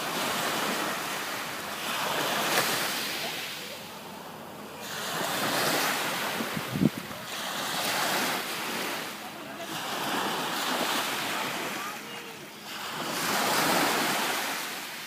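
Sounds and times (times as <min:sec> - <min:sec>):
surf breaking on beach: 0:00.0 - 0:03.9, 0:04.8 - 0:15.0
wind bumps on microphone: 0:06.4 - 0:07.1.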